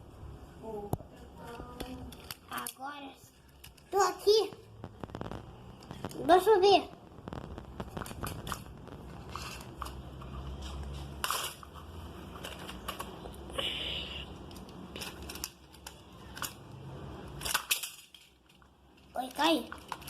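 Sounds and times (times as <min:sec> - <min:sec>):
plastic toys clicking and clattering: 0:01.4 - 0:06.8, 0:07.7 - 0:13.6, 0:14.3 - 0:20.0.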